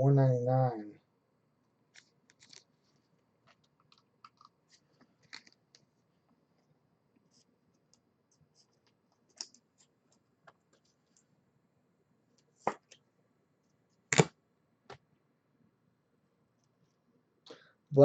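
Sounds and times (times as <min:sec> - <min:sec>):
cards clicking and scraping: 0:02.0 - 0:02.7, 0:03.5 - 0:05.9.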